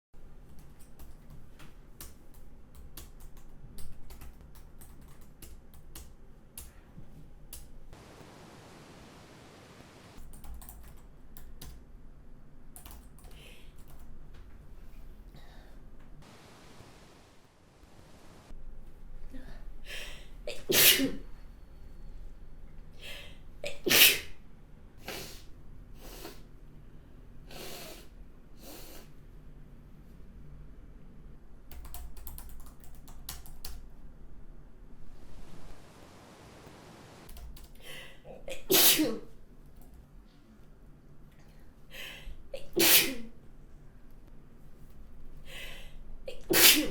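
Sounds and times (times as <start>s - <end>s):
steady soft hiss: 6.7s - 10.2s, 13.4s - 20.4s, 33.8s - 37.3s
woman sneezing: 20.6s - 21.2s, 23.7s - 24.3s, 38.6s - 39.3s, 42.6s - 43.3s, 46.3s - 46.9s.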